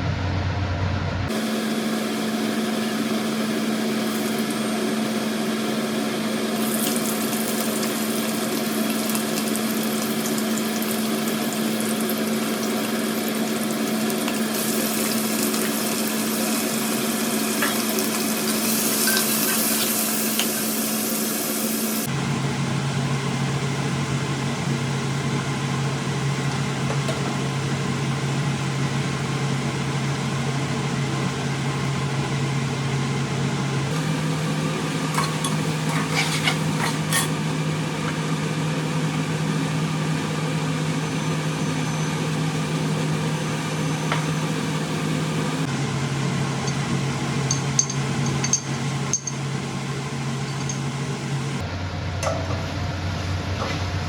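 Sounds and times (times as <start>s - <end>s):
mechanical hum: 0.0s - 54.0s
utensils clinking: 35.1s - 37.4s, 47.5s - 49.4s, 50.5s - 50.9s.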